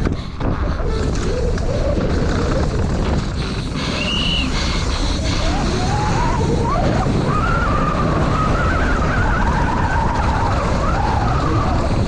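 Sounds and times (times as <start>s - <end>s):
bike tyre noise: 0.0s - 12.0s
wind: 0.0s - 12.0s
whine rising and falling in pitch: 1.2s - 12.0s.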